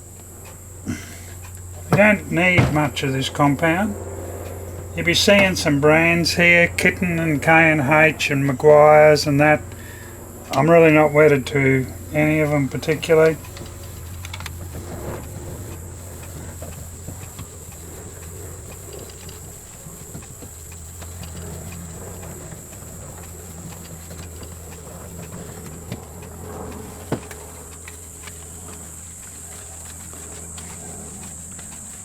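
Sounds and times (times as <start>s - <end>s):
steady high whine: 0.0s - 32.0s
steady low hum: 0.0s - 32.0s
cloth rubbing on plastic lens: 11.2s - 32.0s.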